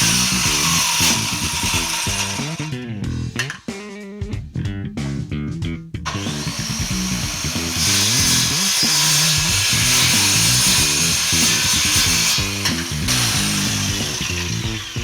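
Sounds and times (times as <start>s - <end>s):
power tool grinding wood: 0.0s - 2.8s, 6.1s - 15.0s
background music with bass: 0.0s - 15.0s.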